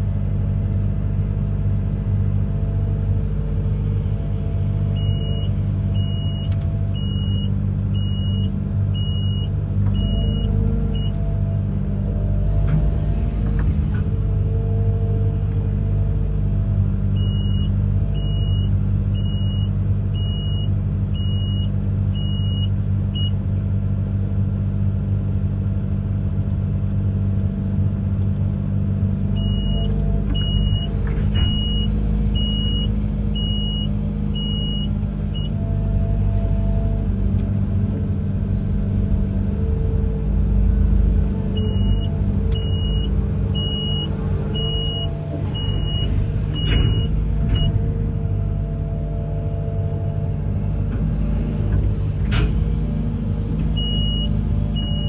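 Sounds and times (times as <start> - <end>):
excavator engine running: 0.0 - 55.0
travel alarm beeping: 5.0 - 11.1, 29.4 - 35.6, 41.7 - 47.8, 53.8 - 55.0.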